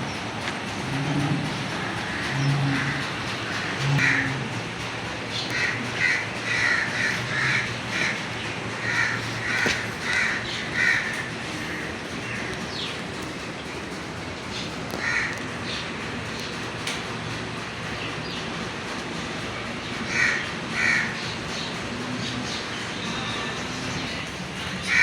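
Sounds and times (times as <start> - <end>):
crows cawing: 1.7 - 4.6, 5.4 - 12.6, 14.9 - 15.8, 20.0 - 25.0.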